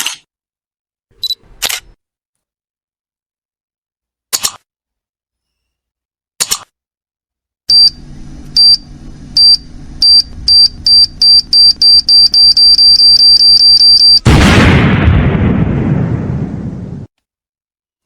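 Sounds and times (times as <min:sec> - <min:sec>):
high electronic beeps: 0:08.6 - 0:14.3
explosion: 0:14.2 - 0:17.1.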